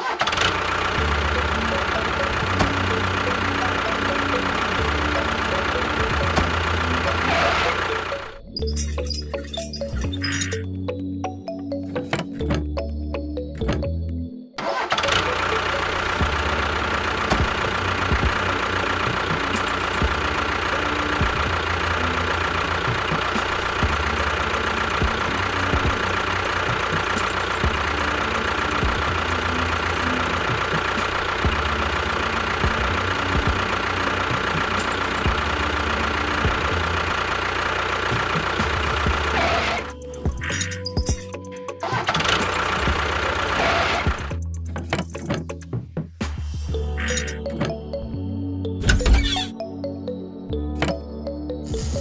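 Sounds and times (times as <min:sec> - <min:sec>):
motor running with whine: 0:00.2 - 0:10.7, 0:15.0 - 0:41.2, 0:41.8 - 0:44.5.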